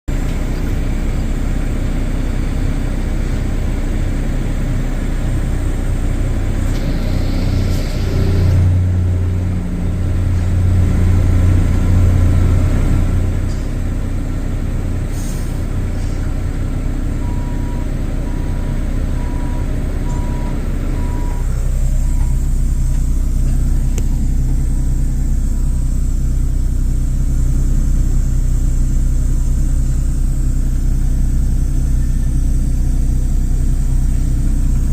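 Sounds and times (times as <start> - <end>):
heavy diesel engines running: 0.1 - 34.9
short beeps: 17.2 - 22.8.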